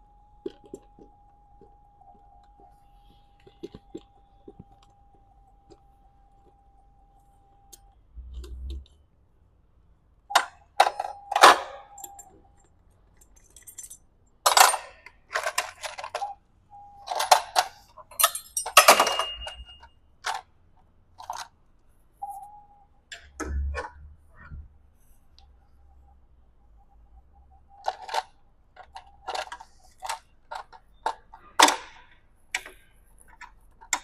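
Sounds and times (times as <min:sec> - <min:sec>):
metal tools clinking and clanking: 0:10.8 - 0:16.4, 0:17.1 - 0:20.4.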